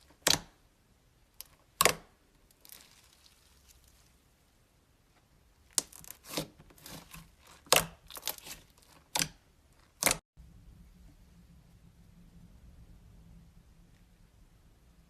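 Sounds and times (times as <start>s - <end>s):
slime crackling and popping: 1.4s - 4.2s, 5.7s - 10.2s.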